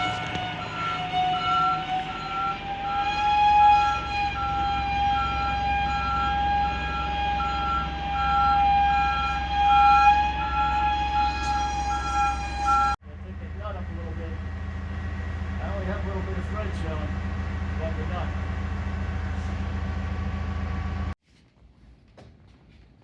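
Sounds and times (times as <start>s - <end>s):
high-pitched whine: 0.0s - 13.0s
reversing alarm beeping: 0.0s - 13.0s
low engine rumble: 0.0s - 21.2s.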